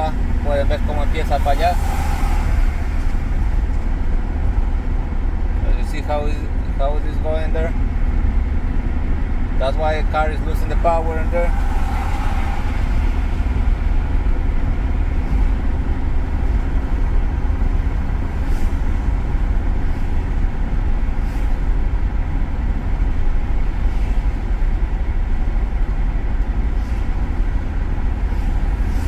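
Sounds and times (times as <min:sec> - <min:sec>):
misfiring car engine rumble: 0:00.0 - 0:29.0.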